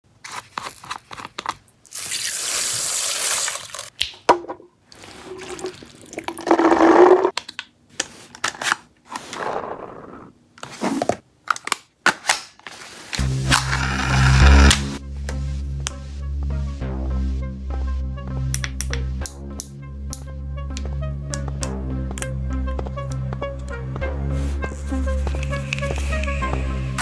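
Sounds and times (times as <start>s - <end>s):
steady hum: 13.2s - 16.2s
hissing: 24.9s - 27.0s.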